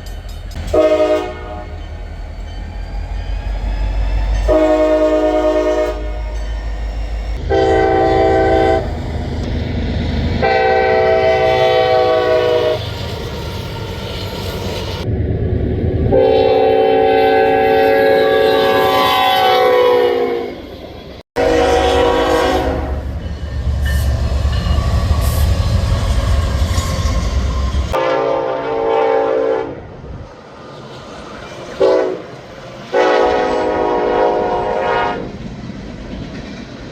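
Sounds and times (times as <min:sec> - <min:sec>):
passing train rumble: 0:00.0 - 0:36.9
locomotive horn blasts: 0:00.6 - 0:01.9, 0:04.4 - 0:06.4, 0:07.4 - 0:09.0, 0:10.4 - 0:12.9, 0:16.1 - 0:20.6, 0:21.4 - 0:23.2, 0:27.9 - 0:29.9, 0:31.8 - 0:32.3, 0:32.9 - 0:35.3.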